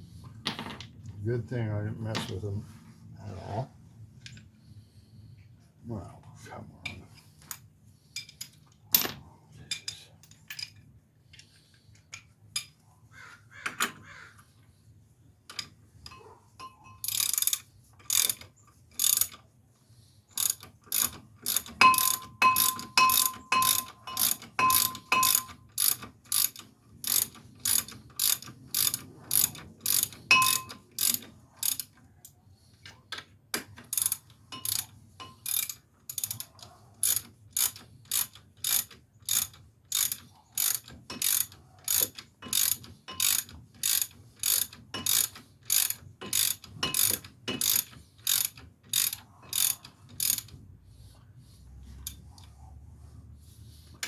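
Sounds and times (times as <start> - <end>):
ratchet wrench clicking: 17.0 - 18.4, 19.0 - 19.4, 20.3 - 31.9, 33.9 - 50.5.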